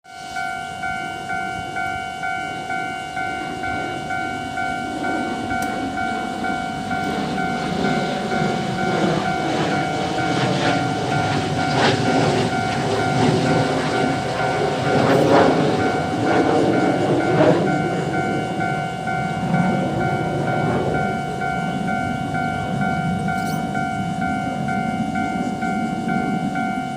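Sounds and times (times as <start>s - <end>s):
train rumbling past: 0.1s - 26.9s
train wheels clacking: 0.5s - 26.9s
level crossing bell dinging: 15.8s - 26.9s.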